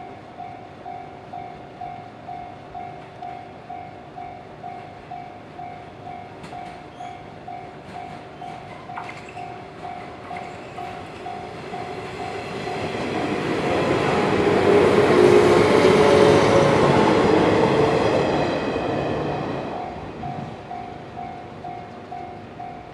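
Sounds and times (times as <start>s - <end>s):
level crossing warning bell: 0.0s - 14.2s, 19.6s - 22.9s
train passing: 0.0s - 22.9s.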